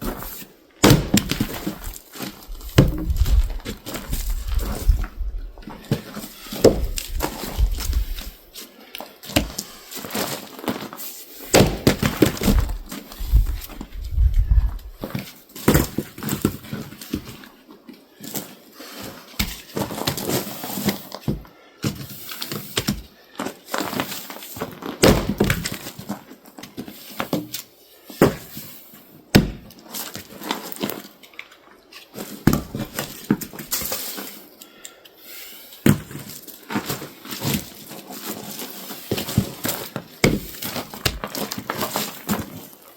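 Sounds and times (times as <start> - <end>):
firewood thunks and clatter: 0.0 - 8.4, 9.2 - 17.5, 19.4 - 22.1, 24.6 - 27.6, 28.2 - 28.7, 29.3 - 31.0, 32.2 - 34.1, 35.8 - 42.7.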